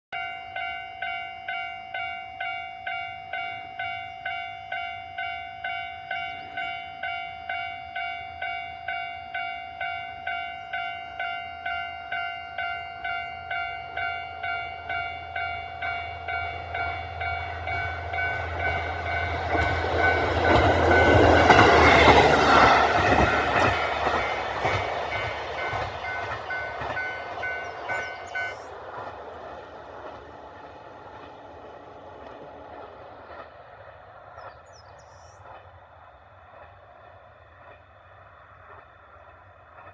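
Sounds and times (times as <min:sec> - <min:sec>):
level-crossing alarm bell: 0:00.2 - 0:28.6
diesel railcar engine drone: 0:00.2 - 0:39.9
train wheel and rail noise: 0:00.2 - 0:39.9.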